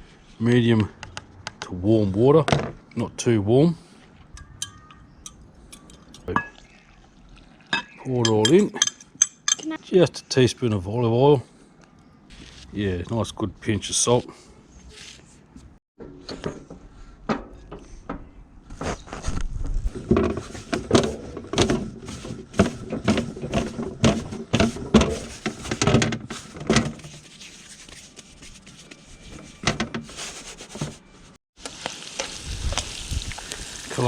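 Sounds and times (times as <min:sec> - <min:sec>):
dough kneaded by hand: 0:18.7 - 0:31.1.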